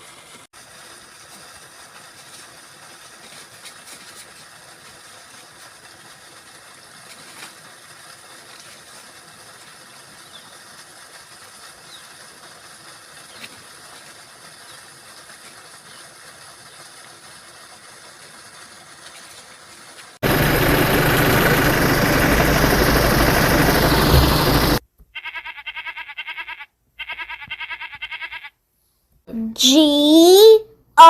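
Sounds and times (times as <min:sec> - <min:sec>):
loud rushing noise: 0:20.2 - 0:24.8
toy goat bleating: 0:25.1 - 0:28.6.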